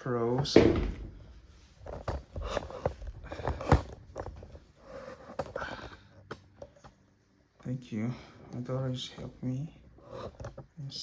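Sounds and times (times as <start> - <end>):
wooden furniture parts knocking: 0.3 - 1.2.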